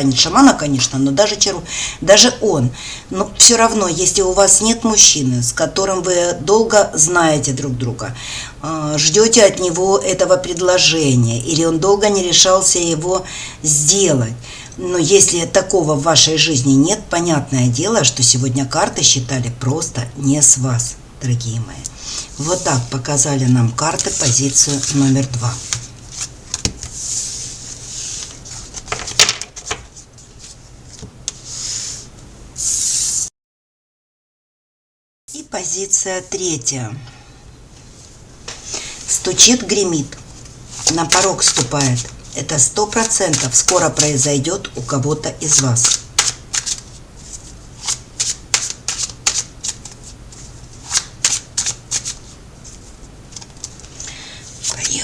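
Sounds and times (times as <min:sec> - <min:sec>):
cards sliding and rubbing: 0:24.0 - 0:33.3, 0:45.5 - 0:54.9
cards tapping on table: 0:26.5 - 0:26.9, 0:28.9 - 0:29.9.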